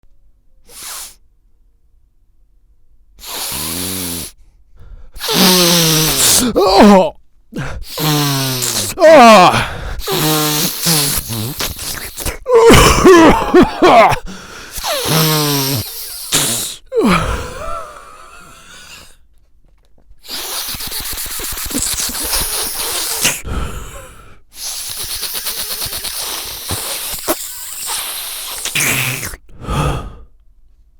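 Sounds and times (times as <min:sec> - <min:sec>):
rapid nasal sniffing and snorting: 0:00.7 - 0:01.2, 0:03.2 - 0:04.4, 0:05.1 - 0:16.9, 0:17.6 - 0:19.2, 0:20.2 - 0:30.2
man exhaling with voice: 0:03.2 - 0:19.2, 0:21.6 - 0:30.3.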